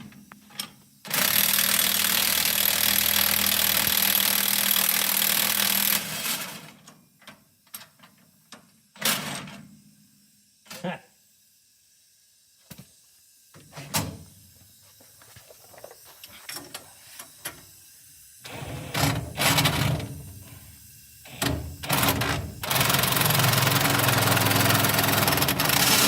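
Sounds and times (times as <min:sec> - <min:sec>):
power tool running: 0:01.1 - 0:06.7, 0:21.3 - 0:26.0.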